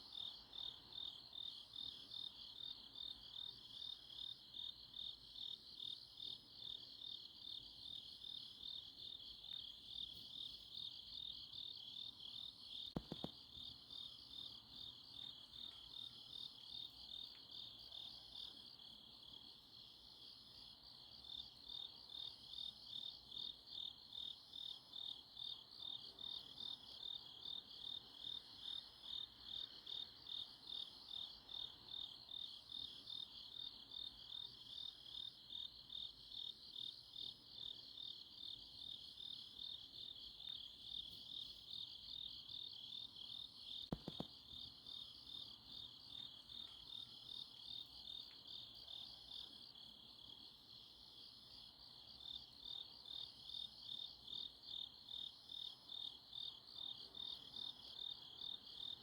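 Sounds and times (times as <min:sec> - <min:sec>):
crickets chirping: 0:00.0 - 0:59.0.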